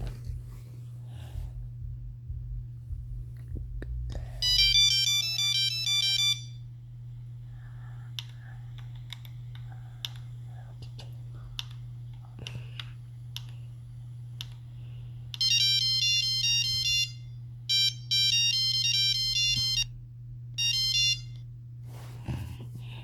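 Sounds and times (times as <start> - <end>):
phone ringtone beeping tune: 4.4 - 6.6, 15.4 - 19.9, 20.6 - 21.3.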